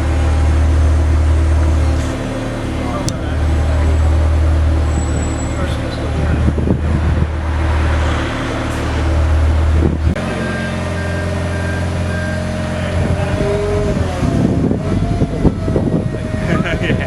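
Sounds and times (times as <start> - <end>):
vehicle engine running: 0.0 - 17.0
short high beeps: 10.3 - 12.6.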